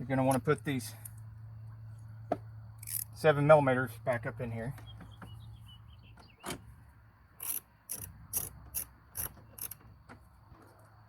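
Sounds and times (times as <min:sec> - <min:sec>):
hand ratchet clicking: 0:02.8 - 0:03.1, 0:07.4 - 0:09.8.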